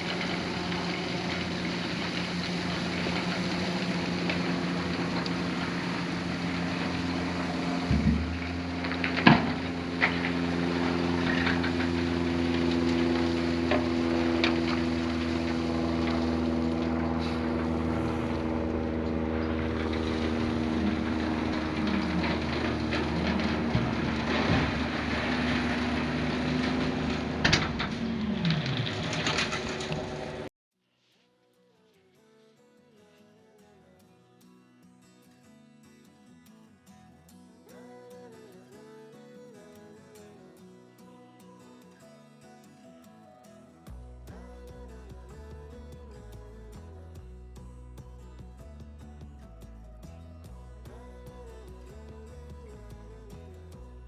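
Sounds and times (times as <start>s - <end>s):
heavy vehicle engine running: 0.0s - 30.5s, 43.9s - 54.0s.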